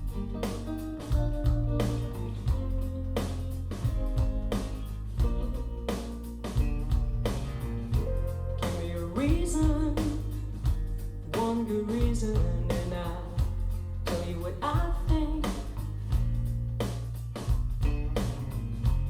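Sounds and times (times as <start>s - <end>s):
rock song with female singer: 7.9s - 16.3s.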